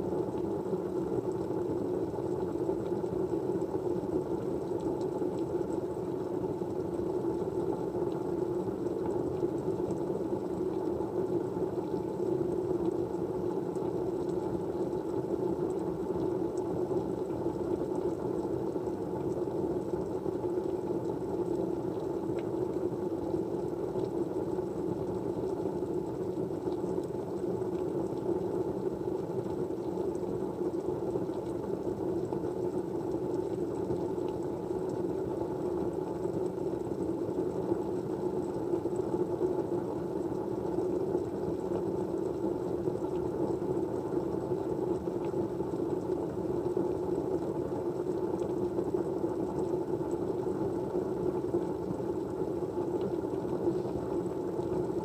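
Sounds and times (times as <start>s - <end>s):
faint ticks: 19.2s - 22.6s.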